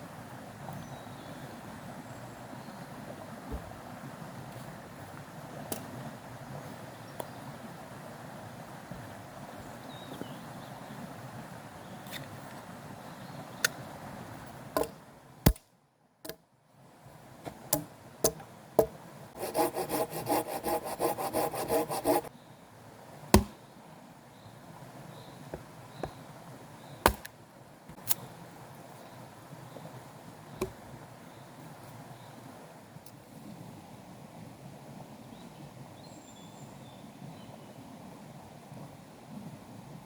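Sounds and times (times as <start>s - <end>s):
rhythmic rasping strokes: 19.4s - 22.3s.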